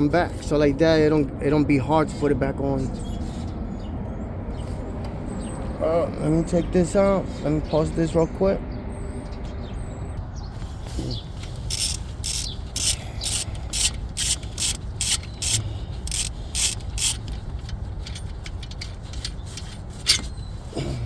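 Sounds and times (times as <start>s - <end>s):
ratchet wrench rasping: 11.4s - 20.7s.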